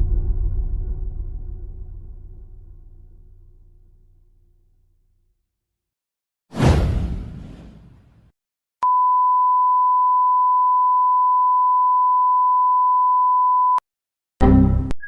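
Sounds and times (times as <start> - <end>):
censor beep: 8.8 - 13.8.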